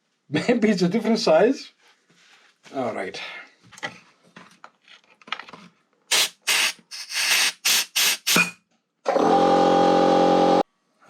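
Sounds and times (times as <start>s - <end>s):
short hissing bursts: 6.1s - 8.4s
small power tool motor: 6.1s - 8.4s.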